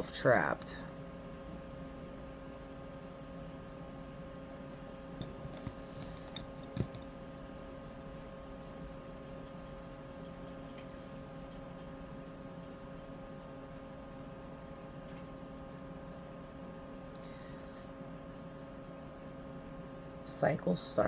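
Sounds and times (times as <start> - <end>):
steady electrical hum: 0.0 - 21.0.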